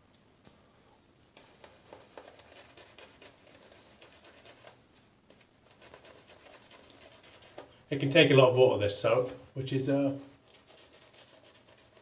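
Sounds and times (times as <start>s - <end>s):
shaving brush lathering soap: 1.4s - 4.8s, 5.7s - 7.7s, 10.4s - 12.0s.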